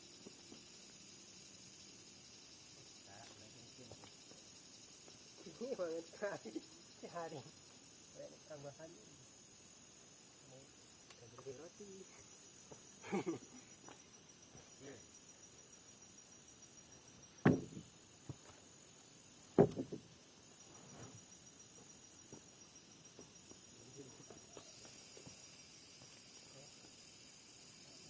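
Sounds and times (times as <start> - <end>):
insects chirring: 0.0 - 28.0
loud sharp knocks: 17.4 - 17.8, 19.6 - 20.0.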